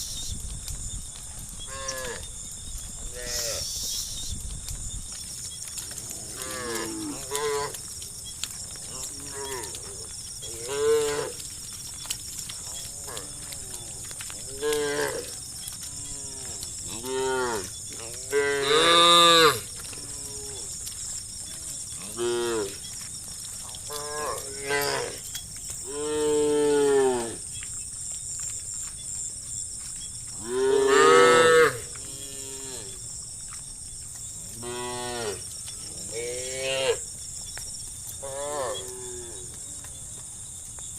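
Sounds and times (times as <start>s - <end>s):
cows mooing: 5.8s - 7.8s, 8.9s - 11.4s, 12.6s - 20.7s, 22.0s - 22.8s, 30.4s - 33.0s.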